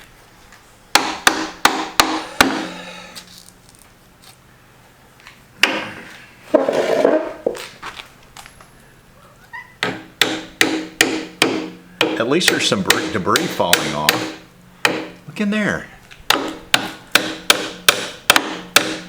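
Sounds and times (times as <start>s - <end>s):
hammer blows ringing on metal: 0.9s - 3.2s, 9.8s - 15.2s, 16.3s - 19.0s
metal scraping: 1.8s - 3.6s, 6.5s - 7.4s.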